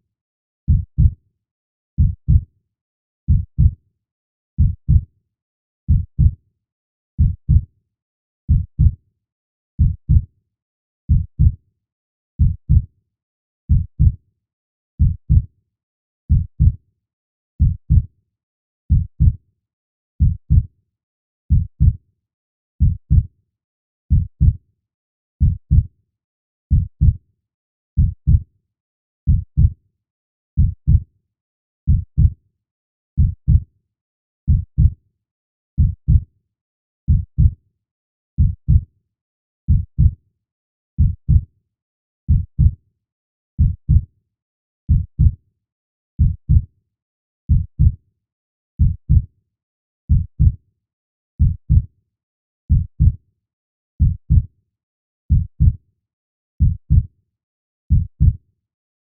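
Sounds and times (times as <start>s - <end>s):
heartbeat thumps: 11.1s - 11.5s, 30.6s - 31.0s, 46.2s - 46.6s, 47.5s - 47.9s, 50.1s - 50.5s, 54.0s - 54.4s, 57.9s - 58.3s.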